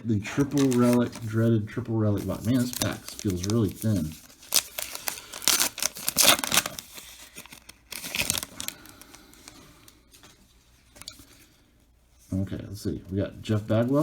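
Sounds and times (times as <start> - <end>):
faint rustling of cards: 0.1 - 14.0
wrapper tearing and crinkling: 0.4 - 1.5, 2.2 - 9.6.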